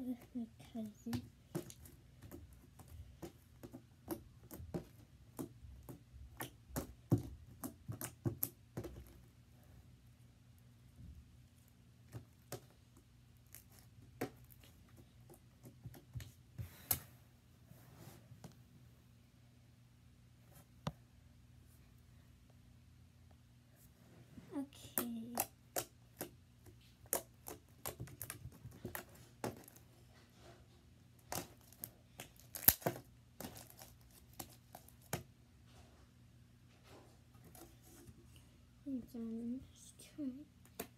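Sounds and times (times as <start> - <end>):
slime squishing with pops: 24.9 - 29.8, 31.2 - 35.3.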